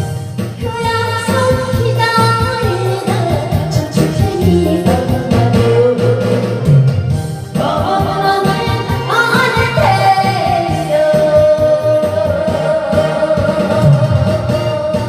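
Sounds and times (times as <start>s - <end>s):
band playing: 0.0s - 15.0s
woman singing: 0.6s - 6.8s, 7.6s - 15.0s.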